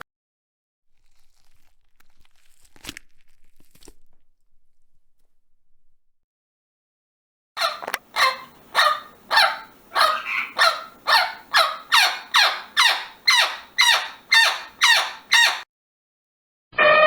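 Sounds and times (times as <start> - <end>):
animal calling with falling cries: 7.6 - 15.6.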